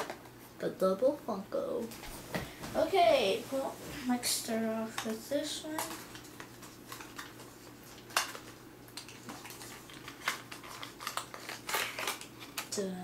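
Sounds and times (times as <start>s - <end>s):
plastic packaging crinkling: 4.8s - 13.0s
packaging snaps: 5.0s - 12.8s.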